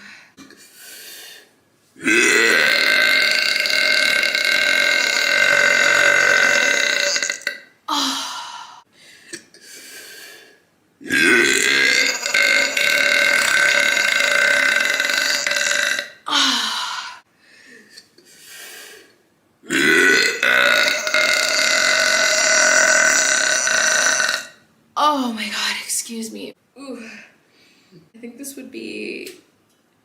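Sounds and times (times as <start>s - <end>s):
woman burping: 2.0s - 8.2s, 11.1s - 16.8s, 19.7s - 24.6s.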